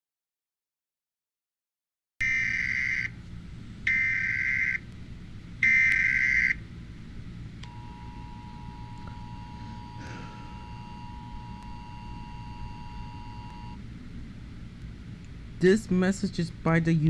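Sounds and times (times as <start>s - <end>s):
data tone bursts: 7.7s - 13.8s
two-tone attention signal: 7.7s - 13.8s.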